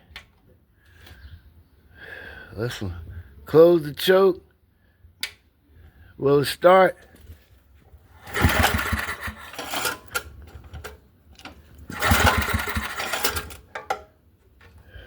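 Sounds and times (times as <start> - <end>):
small engine cranking without starting: 8.2 - 10.3, 11.9 - 13.7.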